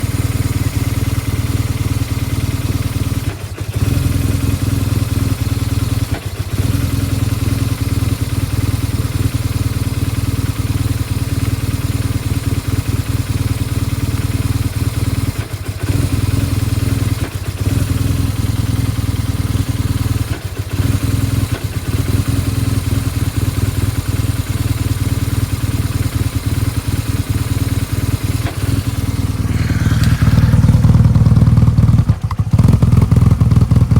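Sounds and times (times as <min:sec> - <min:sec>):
motorcycle engine idling roughly: 0:00.0 - 0:33.9.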